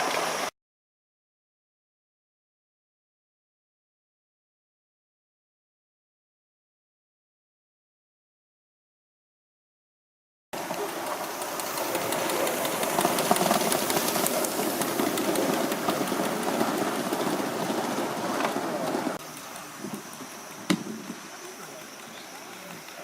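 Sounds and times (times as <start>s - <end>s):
model train running on track: 10.6s - 23.0s.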